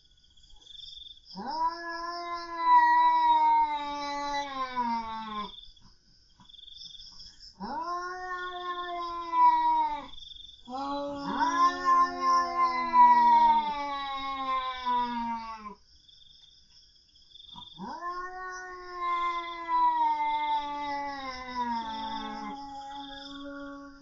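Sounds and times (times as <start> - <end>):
cats yowling: 1.4 - 5.5, 7.6 - 15.8, 17.6 - 24.0.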